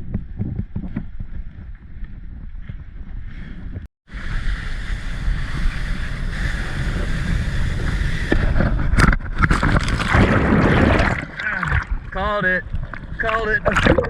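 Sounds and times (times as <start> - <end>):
wind rushing over microphone: 0.0 - 14.0
water hissing under wakeboard: 4.0 - 9.0.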